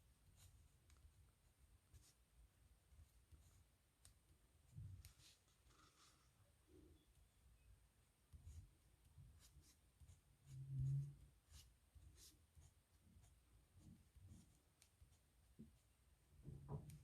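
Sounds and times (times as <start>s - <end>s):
pen scratching on paper: 0.2s - 1.2s, 1.9s - 2.2s, 2.9s - 4.2s, 5.0s - 6.4s, 8.3s - 16.0s.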